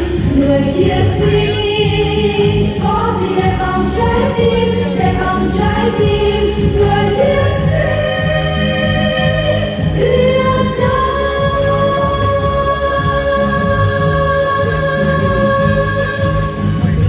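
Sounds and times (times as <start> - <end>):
choir singing held notes: 0.0 - 17.0
instrumental accompaniment: 0.0 - 17.0.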